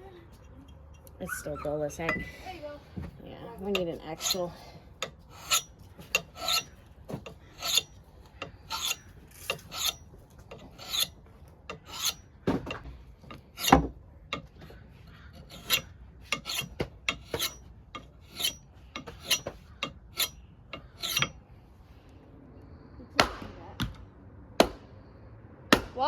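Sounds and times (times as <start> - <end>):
blade scraping on knife sharpener: 3.6 - 12.3, 13.3 - 14.5, 15.4 - 21.4.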